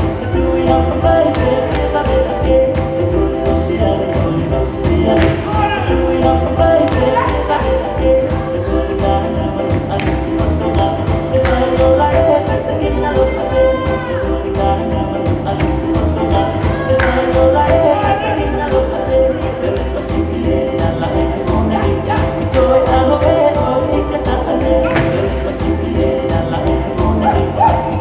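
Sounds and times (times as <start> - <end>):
men's group singing: 0.0 - 28.0
music with steady beat: 0.0 - 28.0
sharp percussive strikes: 24.7 - 26.6.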